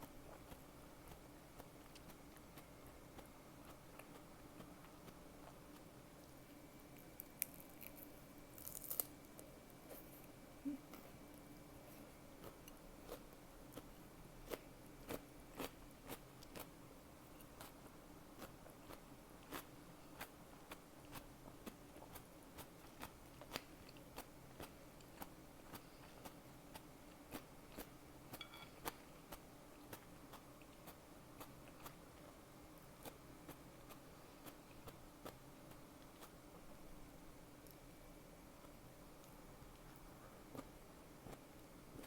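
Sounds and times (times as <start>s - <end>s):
chewing crisp salad: 0.0s - 11.2s, 11.9s - 36.4s.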